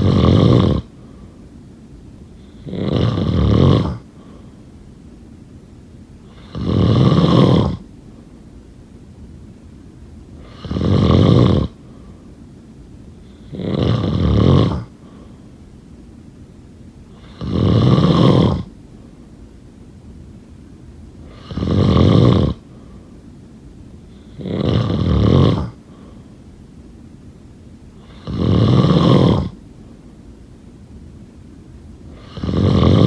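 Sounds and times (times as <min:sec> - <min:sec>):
person snoring: 0:00.0 - 0:01.0, 0:02.4 - 0:04.4, 0:06.3 - 0:07.8, 0:10.4 - 0:11.8, 0:13.3 - 0:14.9, 0:17.2 - 0:18.7, 0:21.3 - 0:22.6, 0:24.2 - 0:25.8, 0:28.0 - 0:29.6, 0:32.1 - 0:33.0.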